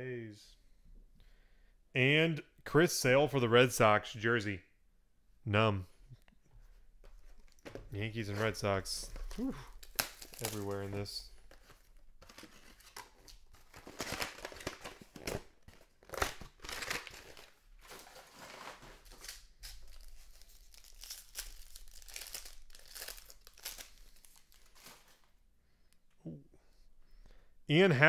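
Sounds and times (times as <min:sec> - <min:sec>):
plastic packaging crinkling and tearing: 0:09.1 - 0:25.3.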